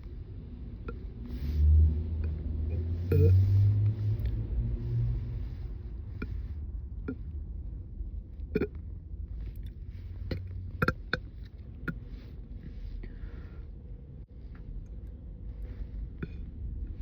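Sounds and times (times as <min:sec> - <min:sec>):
woman burping: 0:03.1 - 0:03.4.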